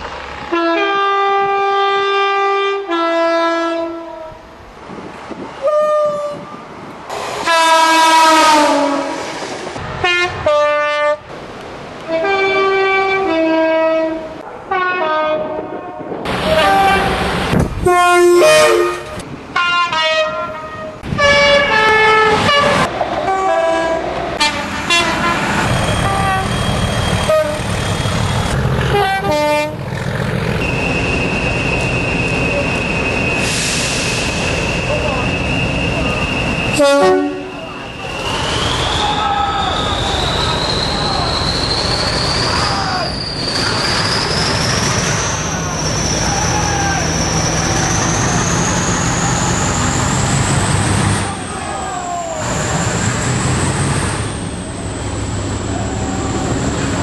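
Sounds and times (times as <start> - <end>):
train running noise: 0.0 - 57.0
two-tone train horn blasts: 0.5 - 4.4, 5.6 - 6.6, 7.4 - 9.2, 10.0 - 11.2, 12.1 - 17.2, 17.8 - 26.6, 27.2 - 27.7, 28.9 - 29.8, 36.7 - 37.8.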